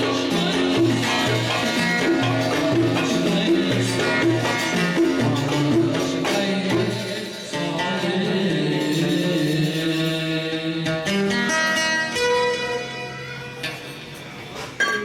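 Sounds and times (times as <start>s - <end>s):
song with plucked strings: 0.0s - 6.8s, 10.8s - 15.0s
hand percussion: 0.0s - 7.6s.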